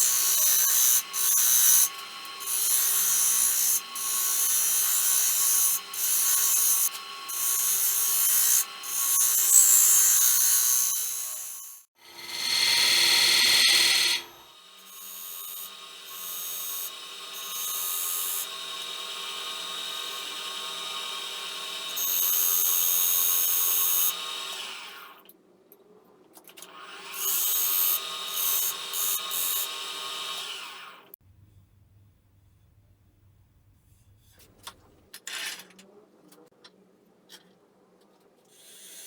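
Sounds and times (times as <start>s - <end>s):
wood lathe motor hum: 26.8s - 31.1s.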